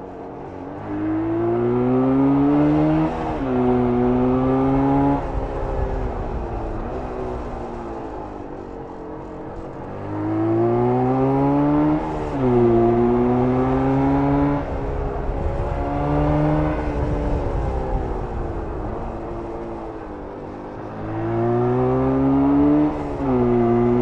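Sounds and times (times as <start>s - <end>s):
motorcycle engine accelerating: 0.0s - 24.0s.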